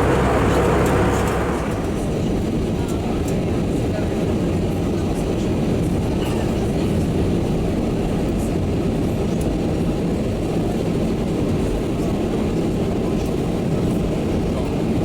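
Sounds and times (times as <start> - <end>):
airplane cabin low rumble: 0.0 - 2.2.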